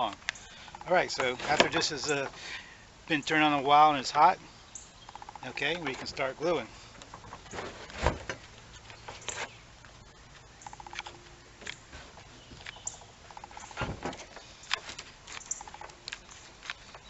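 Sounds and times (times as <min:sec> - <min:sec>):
rapid ticking trills: 0:00.3 - 0:01.3, 0:04.7 - 0:06.6, 0:10.5 - 0:11.6, 0:12.6 - 0:13.8.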